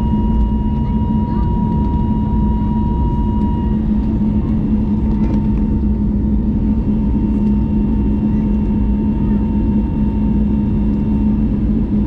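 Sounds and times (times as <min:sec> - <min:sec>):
thin whine: 0:00.0 - 0:05.8
airliner engine and airflow roar: 0:00.0 - 0:12.0
low hum: 0:00.0 - 0:12.0.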